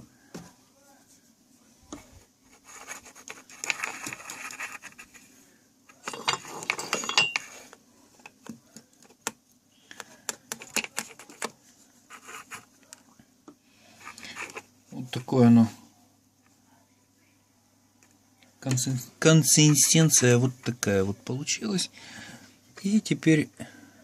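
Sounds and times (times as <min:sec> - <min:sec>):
utensil scraping container: 0:14.0 - 0:14.7.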